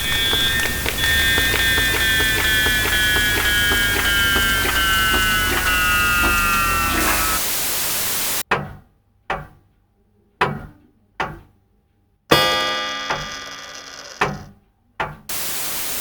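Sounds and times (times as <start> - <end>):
clock ticking: 0.0 - 7.4
ringing chime strike: 0.0 - 7.4, 12.3 - 14.2
radio static: 0.0 - 8.4.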